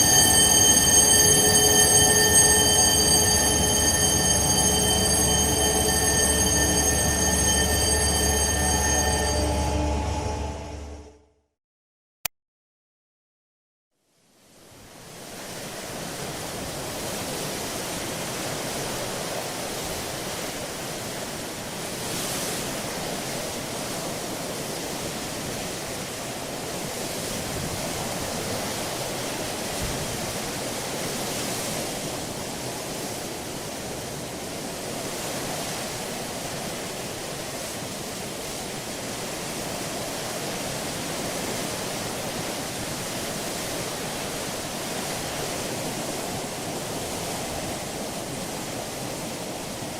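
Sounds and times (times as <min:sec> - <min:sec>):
water and wind rushing along hull: 0:15.1 - 0:49.9.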